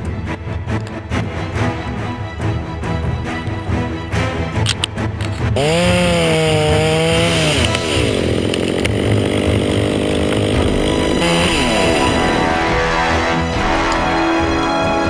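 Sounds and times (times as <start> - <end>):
chainsaw revving: 5.5 - 14.3.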